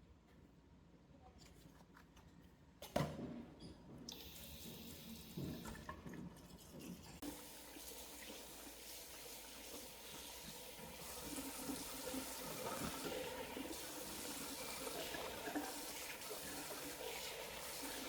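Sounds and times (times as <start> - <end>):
tap water running into sink: 4.1 - 18.0.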